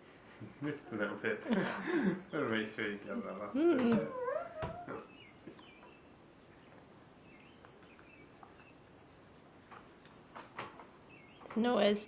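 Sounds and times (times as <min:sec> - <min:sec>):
faint bird chirps: 0:04.1 - 0:08.9, 0:11.0 - 0:11.6.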